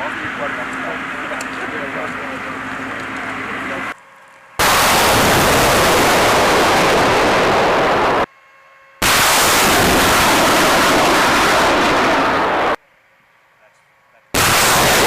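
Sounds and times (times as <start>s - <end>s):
roar of rocket exhaust: 4.6s - 8.3s, 9.0s - 12.8s.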